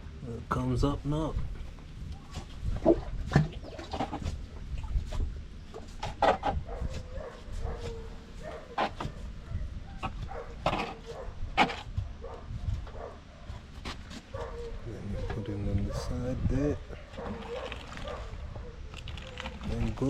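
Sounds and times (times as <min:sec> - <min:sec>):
dog barking and yipping: 0:06.7 - 0:11.4, 0:12.2 - 0:13.3, 0:14.3 - 0:16.2, 0:17.1 - 0:19.6.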